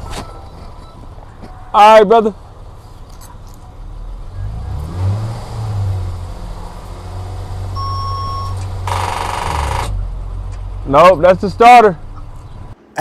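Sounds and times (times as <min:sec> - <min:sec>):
car engine revving: 0:04.1 - 0:10.5
short electronic beep: 0:07.8 - 0:08.6.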